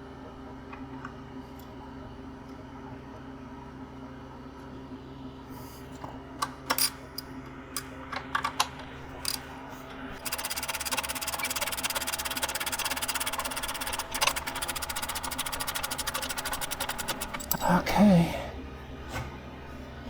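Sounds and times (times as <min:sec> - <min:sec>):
clicks and knocks of parts: 0:06.4 - 0:09.4
rapid mechanical ticking: 0:10.2 - 0:17.6.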